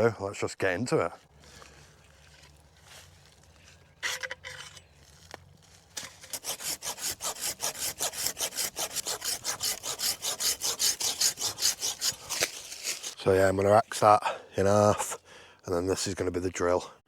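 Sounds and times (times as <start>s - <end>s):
hand saw cutting wood: 6.0s - 13.4s.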